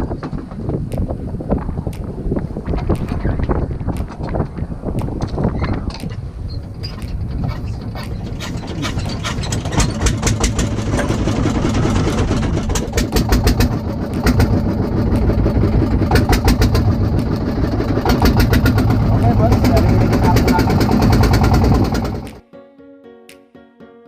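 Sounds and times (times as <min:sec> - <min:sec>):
small engine running: 0:08.1 - 0:22.4.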